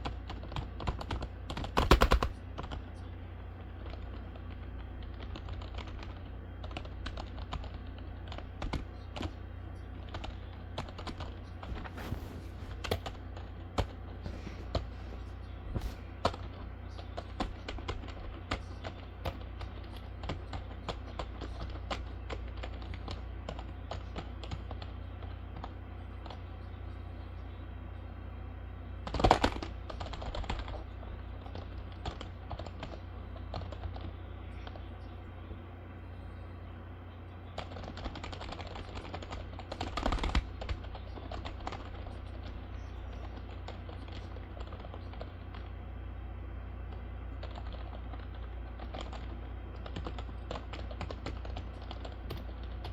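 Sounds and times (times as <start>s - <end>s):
keyboard typing clicks: 0.0s - 2.8s, 3.8s - 15.2s, 29.0s - 34.8s, 37.6s - 45.7s, 46.9s - 52.9s
steady low hum: 0.0s - 52.9s.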